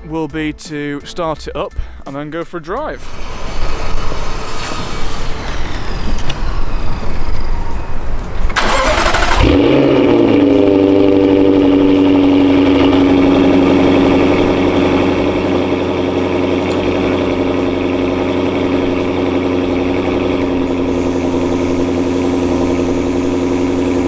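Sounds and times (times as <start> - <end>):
car engine starting and idling: 2.7 - 24.0
rough noise: 2.9 - 9.3.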